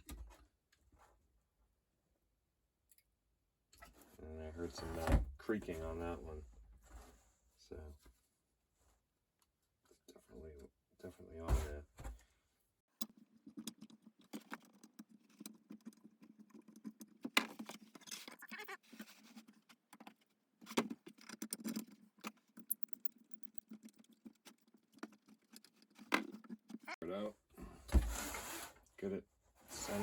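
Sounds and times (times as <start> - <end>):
metal parts clicking and tapping: 19.9 - 26.9.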